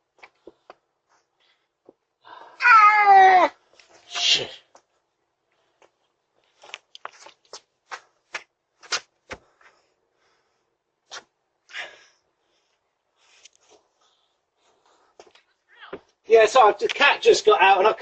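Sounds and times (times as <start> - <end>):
short knocks clicks and scuffs: 5.8 - 9.8.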